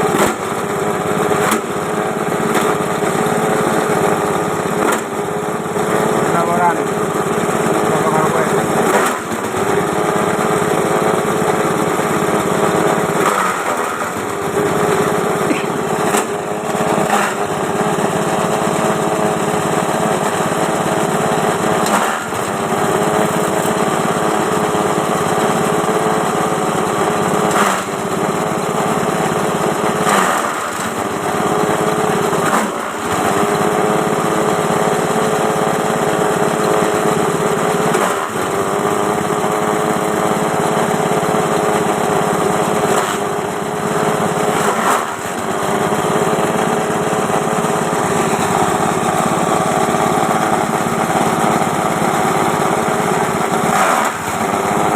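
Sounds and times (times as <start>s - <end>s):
small engine running: 0.0s - 54.9s.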